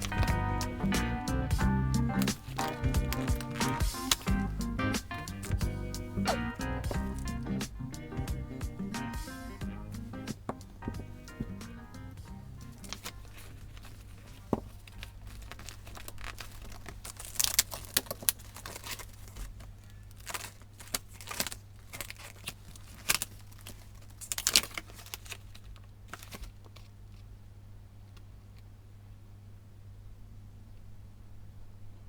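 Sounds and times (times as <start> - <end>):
steady low hum: 0.0 - 16.0
paper and plastic rustling: 0.0 - 27.3.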